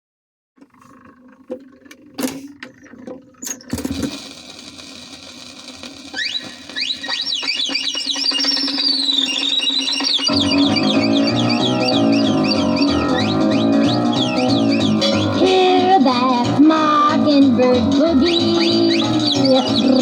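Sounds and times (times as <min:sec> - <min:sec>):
record stylus clicks and crackle: 0:01.5 - 0:07.8
bird-like whistling: 0:06.1 - 0:16.2, 0:17.9 - 0:20.0.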